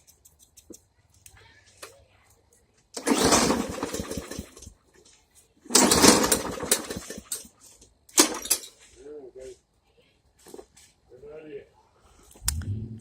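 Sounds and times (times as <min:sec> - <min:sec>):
lawn mower engine turning over: 0:03.0 - 0:04.7, 0:05.7 - 0:07.5, 0:08.2 - 0:08.7.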